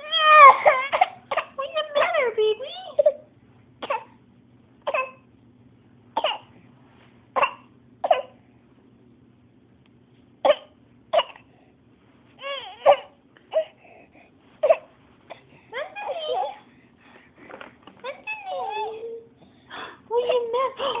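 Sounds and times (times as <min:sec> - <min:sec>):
baby fake-coughing: 0:00.4 - 0:01.6, 0:03.8 - 0:04.2, 0:04.8 - 0:05.3, 0:06.2 - 0:06.5, 0:07.4 - 0:08.4, 0:10.4 - 0:11.5, 0:12.4 - 0:13.8, 0:14.6 - 0:16.6
baby wavering vocal sound: 0:18.0 - 0:19.2.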